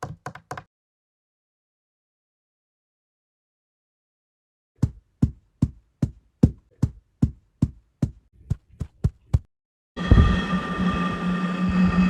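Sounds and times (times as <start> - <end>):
rumbling noise with held tone: 10.0 - 12.0.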